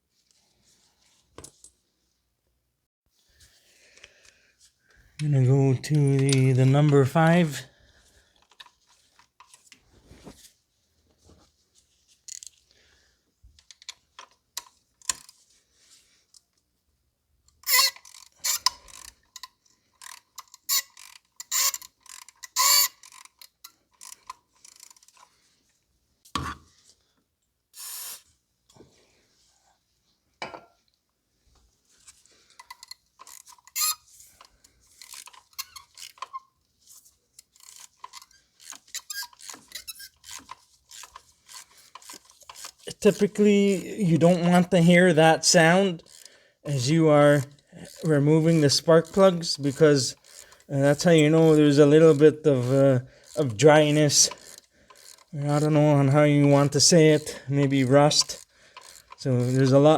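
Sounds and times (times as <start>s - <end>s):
ratchet clicks and knocks: 17.6s - 25.3s, 32.6s - 36.4s, 37.3s - 43.8s, 46.0s - 46.3s, 47.3s - 59.9s.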